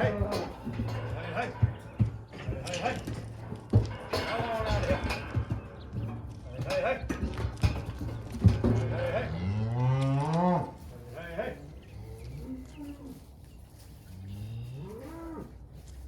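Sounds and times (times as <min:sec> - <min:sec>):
cattle mooing: 0:00.0 - 0:01.9, 0:08.8 - 0:10.8, 0:14.2 - 0:15.5.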